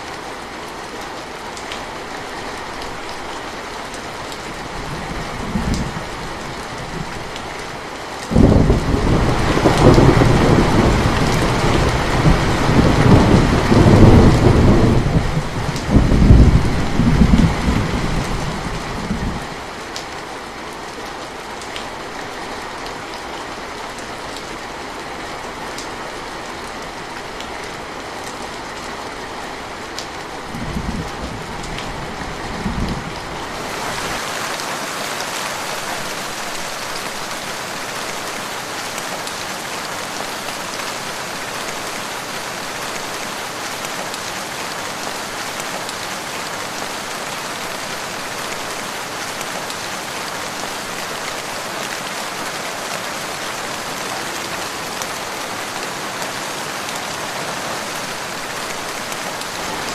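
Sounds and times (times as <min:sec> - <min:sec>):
heavy rain: 0:00.0 - 0:59.9
thunder rumbling: 0:08.3 - 0:19.4.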